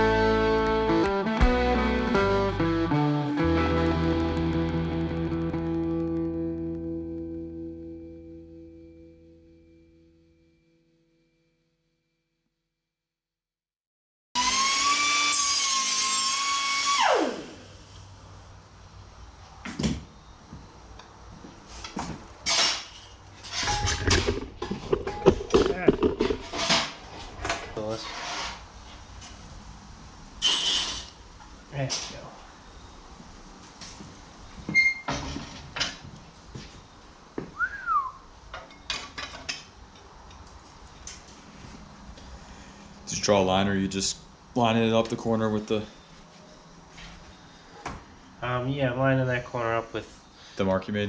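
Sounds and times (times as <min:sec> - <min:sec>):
high-pitched power tool whine: 0:14.4 - 0:18.1
sheet metal and tools clattering: 0:22.4 - 0:28.6
whistled note: 0:37.6 - 0:38.2.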